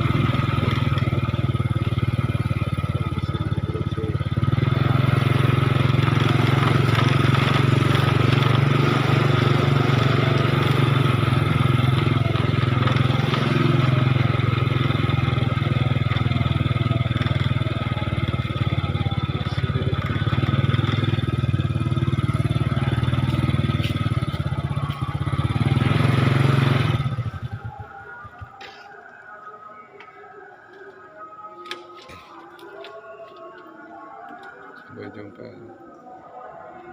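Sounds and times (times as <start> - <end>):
motorcycle engine droning: 0.0 - 36.9
road noise: 0.0 - 36.9.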